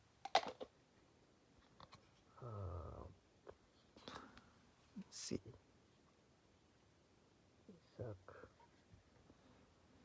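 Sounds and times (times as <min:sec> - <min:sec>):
man humming hmm: 0:02.4 - 0:03.1.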